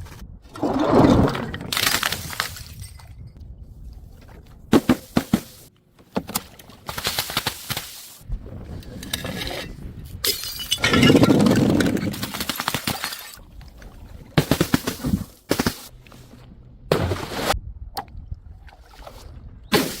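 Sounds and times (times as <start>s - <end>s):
glass bottles smashing: 10.2s - 11.8s, 12.8s - 13.4s.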